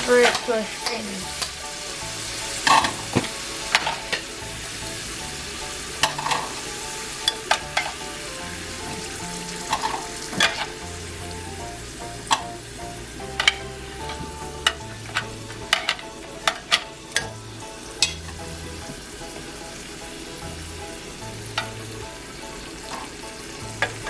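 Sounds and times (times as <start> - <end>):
fries sizzling in hot oil: 0.0 - 24.0.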